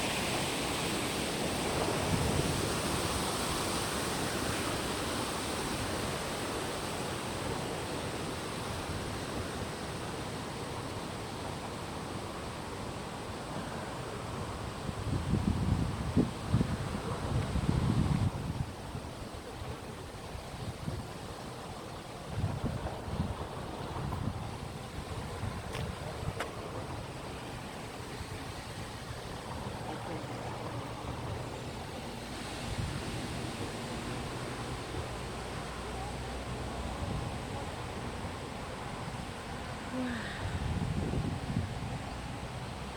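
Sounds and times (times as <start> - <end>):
stream water rushing: 0.0 - 42.9
wind rumble on microphone: 14.1 - 42.9.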